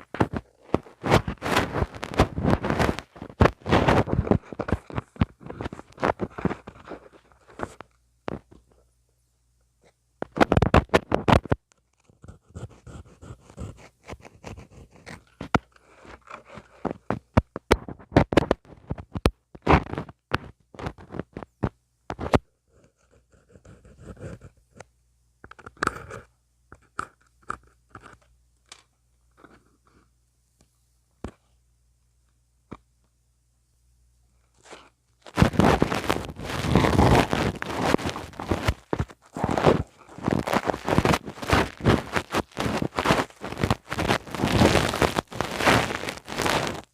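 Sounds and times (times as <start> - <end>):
ear pick scraping microphone: 0.0 - 8.5, 10.3 - 24.6, 34.6 - 46.9.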